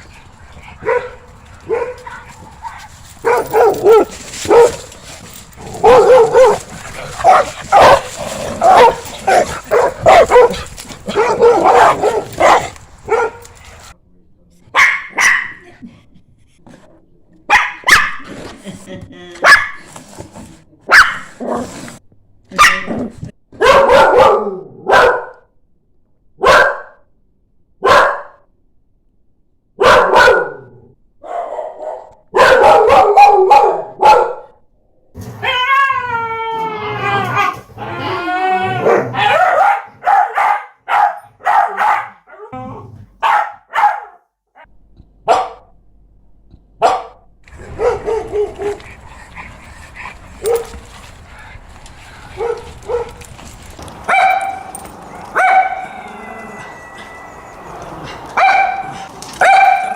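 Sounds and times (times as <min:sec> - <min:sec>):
dog barking: 0:00.8 - 0:02.2, 0:03.2 - 0:04.8, 0:05.8 - 0:06.6, 0:07.2 - 0:13.4, 0:14.8 - 0:15.6, 0:17.5 - 0:18.3, 0:19.4 - 0:19.9, 0:20.9 - 0:21.6, 0:22.5 - 0:23.0, 0:23.6 - 0:25.5, 0:26.4 - 0:27.0, 0:27.8 - 0:28.4, 0:29.8 - 0:34.6, 0:38.8 - 0:42.5, 0:43.2 - 0:45.7, 0:46.8 - 0:48.9, 0:50.4 - 0:50.8, 0:52.4 - 0:53.2, 0:54.1 - 0:54.7, 0:55.4 - 0:55.9, 0:58.4 - 0:59.9
dog howling: 0:35.4 - 0:39.6, 0:55.3 - 0:59.9.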